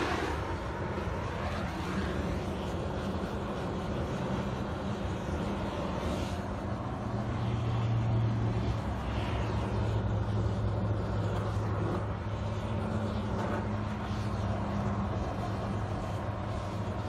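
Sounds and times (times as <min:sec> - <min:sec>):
backhoe engine running: 0:08.0 - 0:17.0.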